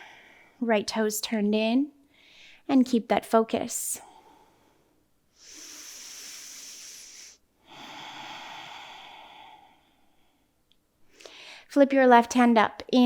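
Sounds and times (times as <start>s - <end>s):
person breathing slowly: 4.0s - 11.7s.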